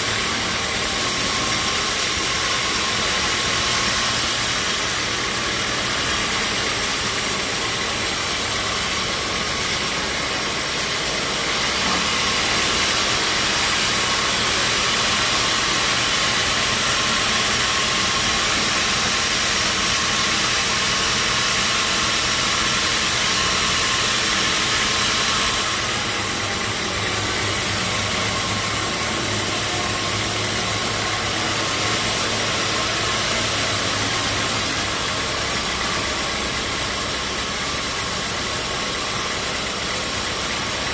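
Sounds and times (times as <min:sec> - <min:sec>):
band saw running: 0:00.0 - 0:40.9.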